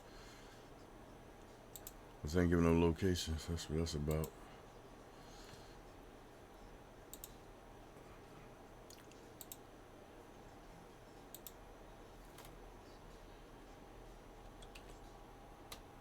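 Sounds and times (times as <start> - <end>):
faint steady hum: 0.0 - 16.0
computer mouse clicking: 1.7 - 2.0, 7.1 - 7.4, 8.9 - 9.6, 11.3 - 11.6, 14.4 - 15.0.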